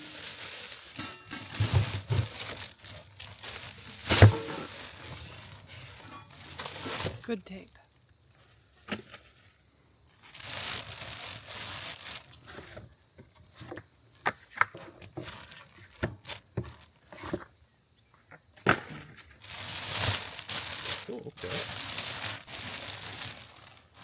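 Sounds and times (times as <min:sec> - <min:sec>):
cardboard rustling: 0:00.0 - 0:07.3
faint insect hum: 0:00.1 - 0:24.0.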